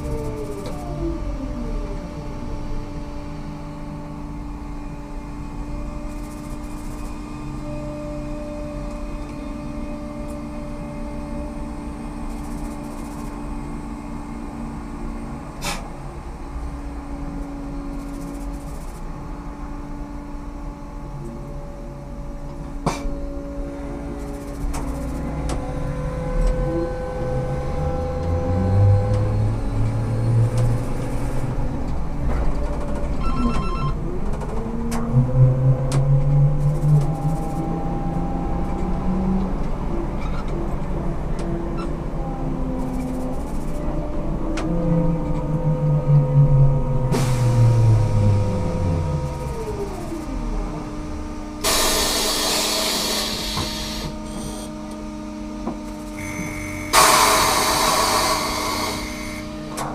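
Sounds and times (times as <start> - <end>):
trolleybus electric motor whining: 0.0 - 59.9
compressed air hiss: 51.6 - 54.7, 56.2 - 59.6.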